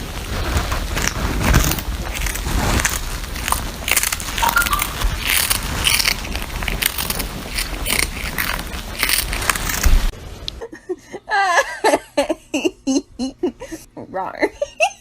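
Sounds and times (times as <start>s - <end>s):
loud crunching crackling: 0.0s - 10.1s
high-pitched squeals or giggles: 4.4s - 5.1s.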